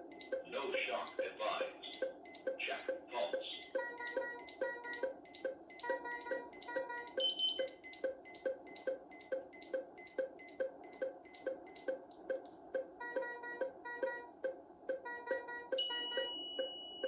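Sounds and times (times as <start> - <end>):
fast heartbeat beeps: 0.0 - 17.0
multi-pitch alarm beeps: 0.0 - 17.0
steady high tone: 12.2 - 17.0.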